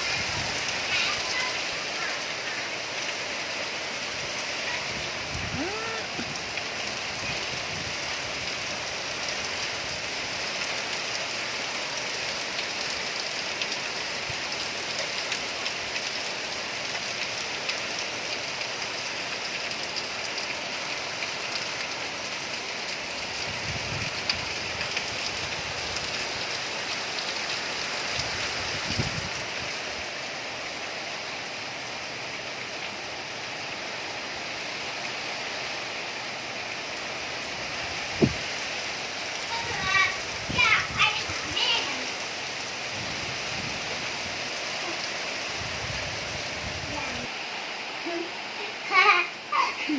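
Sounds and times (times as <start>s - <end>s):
heavy rain in strong wind: 0.0s - 49.9s.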